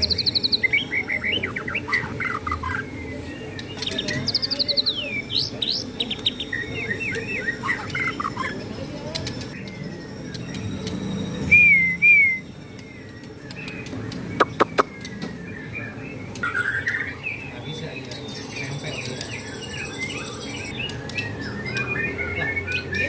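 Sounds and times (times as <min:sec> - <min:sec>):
bird singing whistles and trills: 0:00.0 - 0:23.0.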